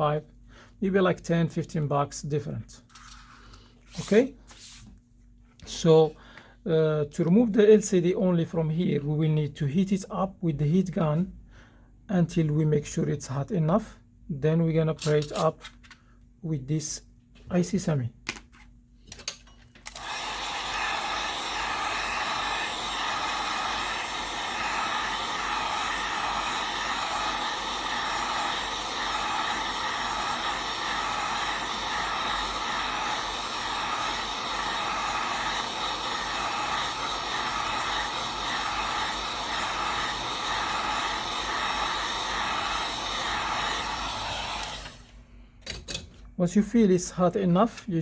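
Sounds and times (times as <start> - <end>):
heat gun blowing: 19.8 - 45.4.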